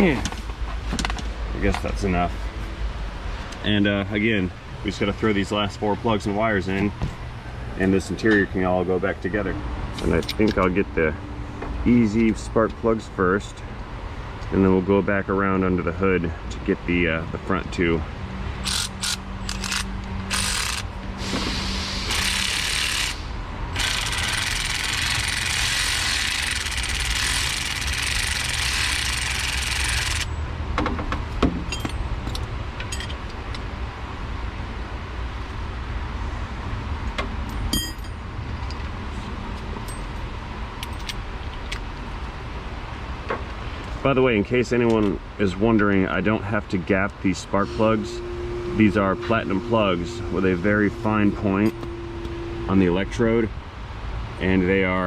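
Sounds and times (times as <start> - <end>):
ratchet and socket clicking: 18.6 - 20.9, 22.1 - 23.2, 23.8 - 30.3
loud hiss in spurts: 21.2 - 23.3
steady low hum: 43.6 - 55.0.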